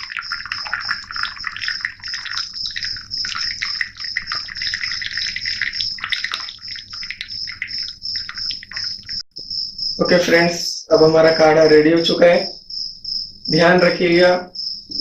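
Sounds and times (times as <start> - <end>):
liquid pouring and splashing: 0.0 - 9.2
high pulsing chirping: 0.0 - 15.0.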